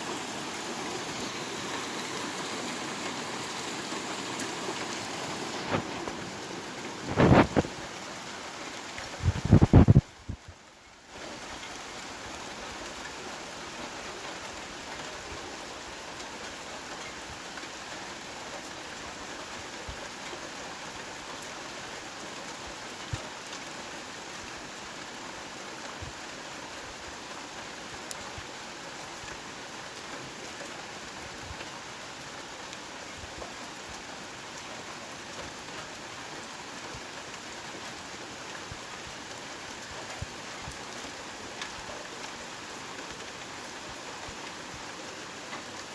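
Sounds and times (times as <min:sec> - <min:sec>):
heavy rain hissing: 0:00.0 - 0:10.4.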